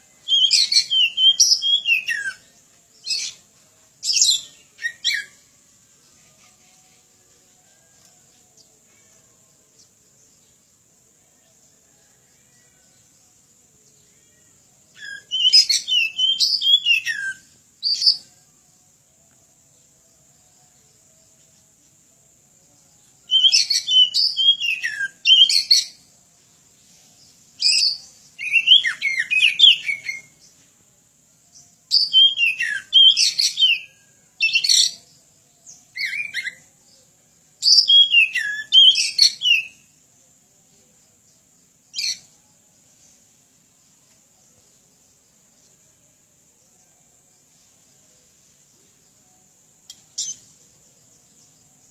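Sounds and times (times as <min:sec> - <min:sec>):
songbird whistling and warbling: 0:00.2 - 0:03.4, 0:04.0 - 0:05.4, 0:15.0 - 0:18.3, 0:23.3 - 0:26.0, 0:27.6 - 0:30.4, 0:31.9 - 0:35.0, 0:37.6 - 0:39.8, 0:50.1 - 0:50.5.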